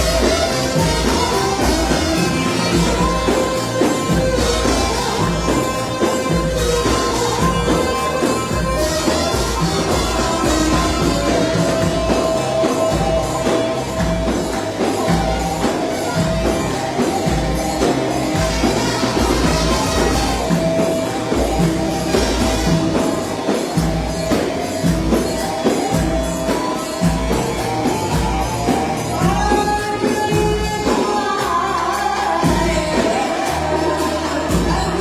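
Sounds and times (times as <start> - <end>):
pop song with drum beat: 0.0 - 35.0
tambourine: 0.0 - 35.0
person singing: 25.2 - 35.0.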